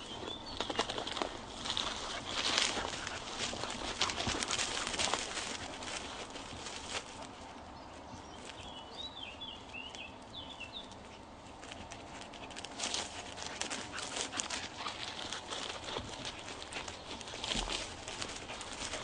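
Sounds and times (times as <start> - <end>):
bird chirping: 0.0 - 1.9, 7.7 - 11.0
rustling through vegetation: 0.0 - 19.0.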